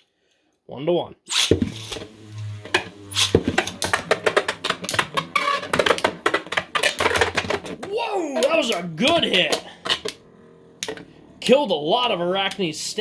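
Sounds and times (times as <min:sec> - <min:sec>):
low spinning hum: 0:01.8 - 0:13.0
plastic tops clacking together: 0:03.2 - 0:08.9.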